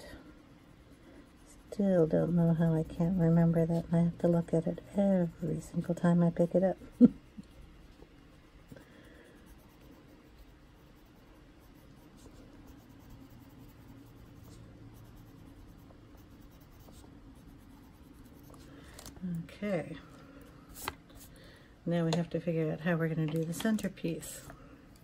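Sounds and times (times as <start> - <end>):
low steady hum: 0.0 - 25.0
colored pencil scratching on paper: 0.9 - 19.1.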